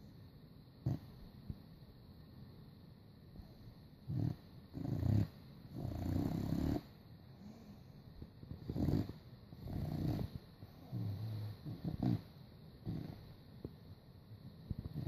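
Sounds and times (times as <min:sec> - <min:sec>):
puppy snoring: 0:00.8 - 0:01.3, 0:03.4 - 0:13.8, 0:14.7 - 0:15.0.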